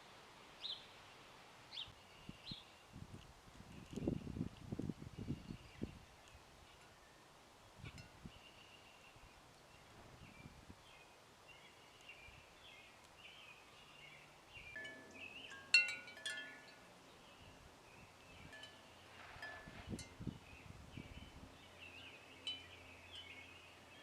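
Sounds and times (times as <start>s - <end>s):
wind chimes ringing: 14.7s - 17.0s, 18.4s - 20.3s, 22.4s - 23.4s.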